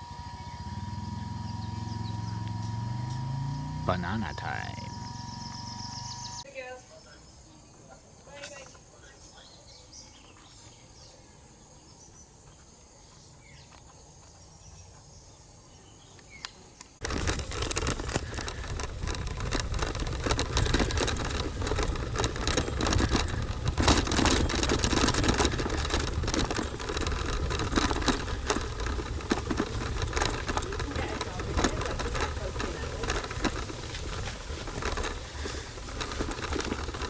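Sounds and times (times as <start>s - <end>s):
wind and road noise: 0.0s - 6.5s, 13.4s - 37.0s
thin bird or insect calls: 0.1s - 17.0s
rattling and knocking: 17.0s - 37.0s.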